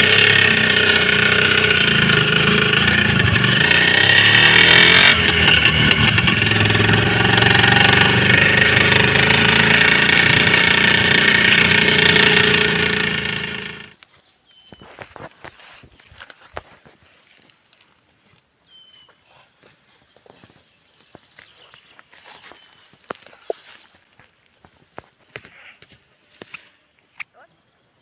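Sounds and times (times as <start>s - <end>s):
two-stroke motorcycle engine: 0.0s - 14.0s.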